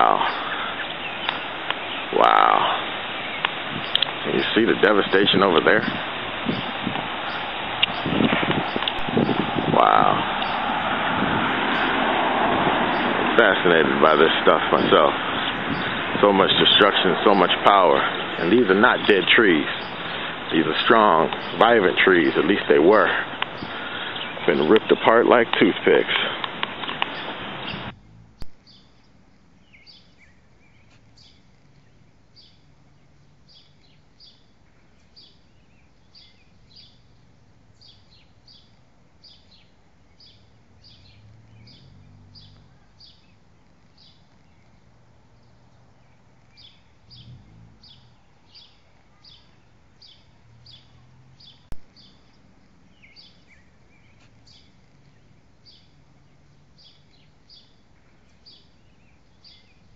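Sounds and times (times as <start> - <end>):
small bird chirping: 0.0 - 12.0, 12.8 - 59.9
outdoor background noise: 0.0 - 59.9
sharp clicks: 3.4 - 4.2, 7.8 - 9.1, 26.3 - 28.6.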